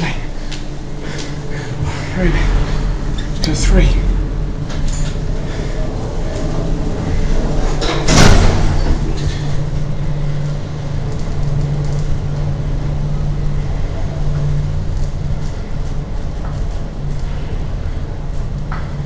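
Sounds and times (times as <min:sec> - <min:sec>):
lift car humming in motion: 0:00.0 - 0:19.0.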